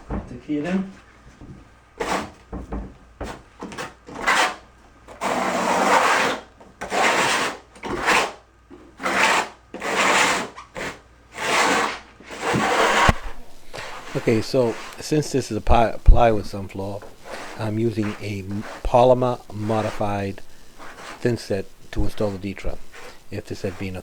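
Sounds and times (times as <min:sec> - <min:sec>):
trowel scraping mortar: 0:05.2 - 0:08.4, 0:09.0 - 0:24.0.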